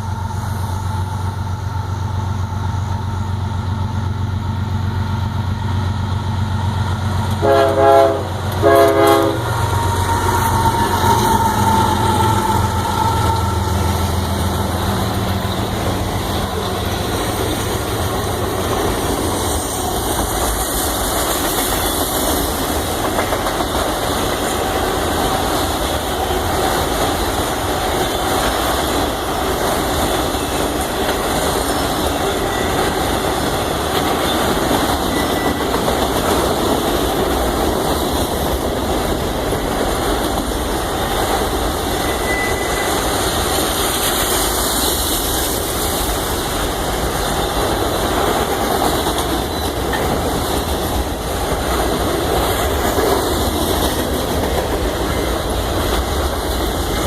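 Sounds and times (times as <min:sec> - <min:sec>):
train rumbling past: 0:00.0 - 0:57.0
locomotive horn chord: 0:07.4 - 0:14.1.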